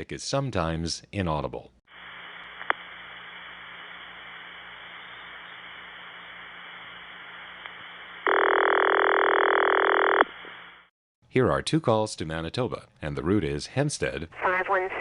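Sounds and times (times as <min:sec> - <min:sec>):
telephone line hiss: 0:01.9 - 0:10.9.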